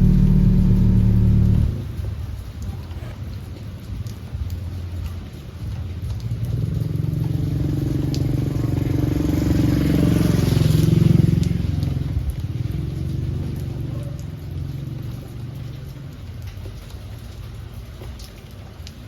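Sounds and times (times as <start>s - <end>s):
vehicle engine passing by: 0.0s - 2.2s, 6.3s - 15.7s
falling rain hiss: 0.0s - 19.0s.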